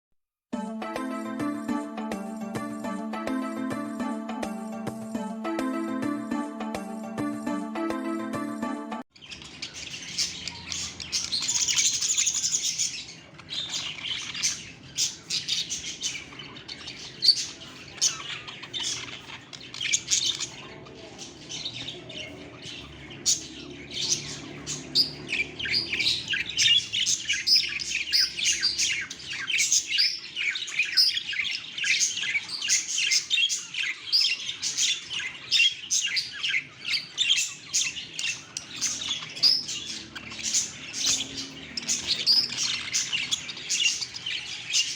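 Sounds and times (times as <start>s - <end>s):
budgerigars chirping: 9.2s - 44.9s.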